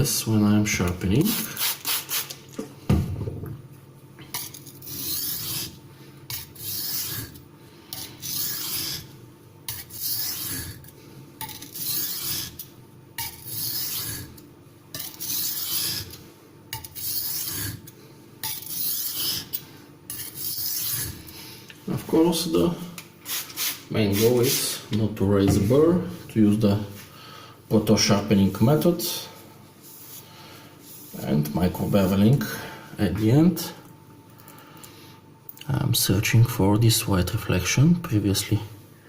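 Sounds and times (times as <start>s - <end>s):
knife scraping on sharpening stone: 4.4s - 9.1s, 9.7s - 21.1s.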